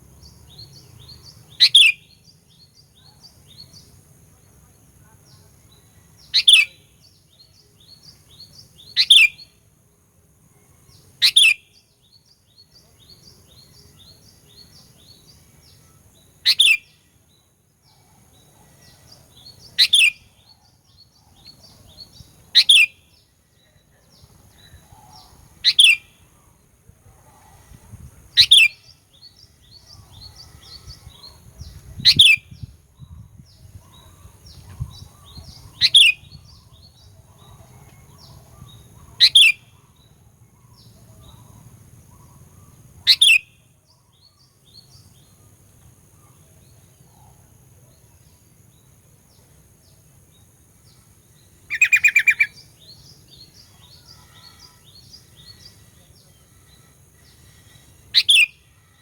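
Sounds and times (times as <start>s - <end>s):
soft bird chirping: 0.0s - 4.0s, 5.0s - 9.6s, 10.5s - 59.0s
bulbul calling: 0.5s - 2.3s, 6.2s - 7.0s, 11.2s - 11.7s, 13.1s - 17.0s, 17.9s - 23.2s, 24.1s - 26.4s, 28.3s - 43.6s, 51.6s - 58.7s.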